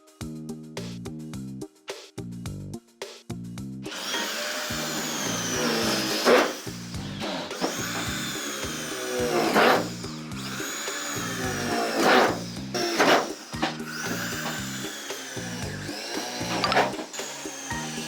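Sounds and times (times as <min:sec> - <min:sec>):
background music: 0:00.0 - 0:18.0
power tool motor whining: 0:03.9 - 0:18.0.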